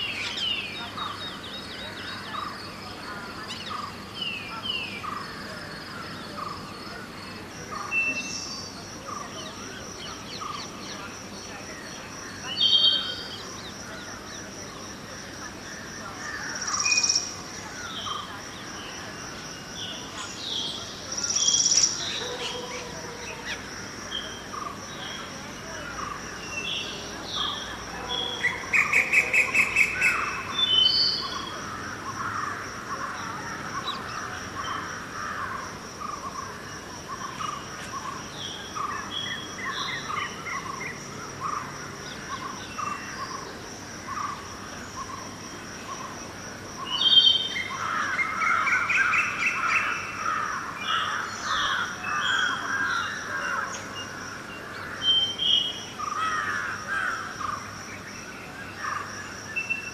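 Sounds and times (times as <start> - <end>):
birds chirping: 0.0 - 46.2.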